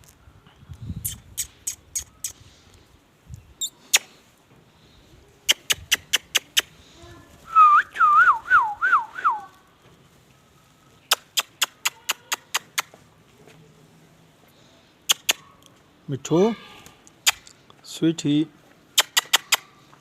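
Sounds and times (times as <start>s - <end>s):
quick sharp clicks: 3.8s - 4.2s, 5.5s - 6.7s, 11.1s - 13.0s, 15.1s - 15.7s, 17.1s - 17.6s, 19.0s - 19.7s.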